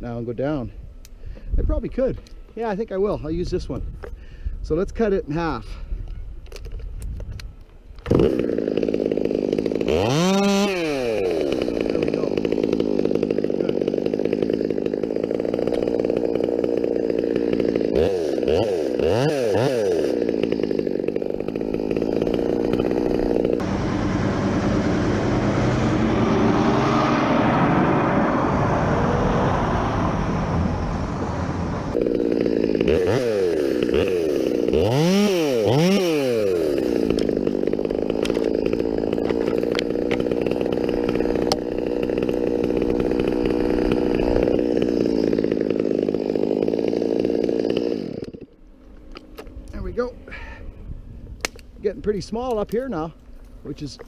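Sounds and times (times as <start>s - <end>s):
chainsaw cutting through limb: 8.0s - 49.8s
chainsaw idling and revving: 8.0s - 50.4s.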